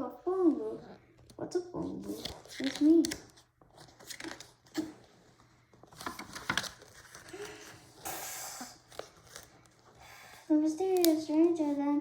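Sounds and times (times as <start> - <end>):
book pages rustling: 1.1 - 8.0, 8.8 - 10.1, 10.8 - 12.0.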